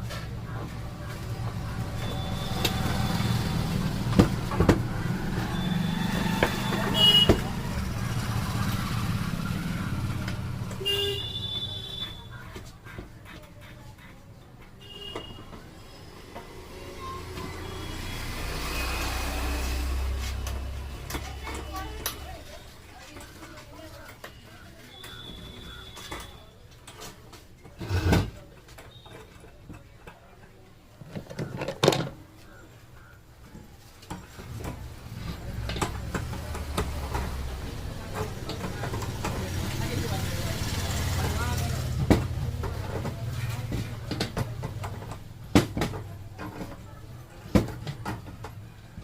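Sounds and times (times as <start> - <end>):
hard parts knocking and clicking: 31.0 - 32.3, 33.4 - 39.8.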